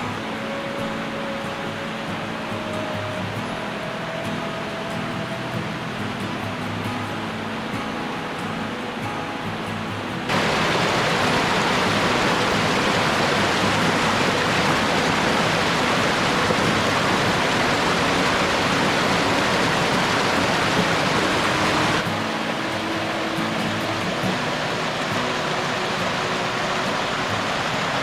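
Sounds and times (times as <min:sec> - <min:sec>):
rushing water: 0:00.0 - 0:28.0.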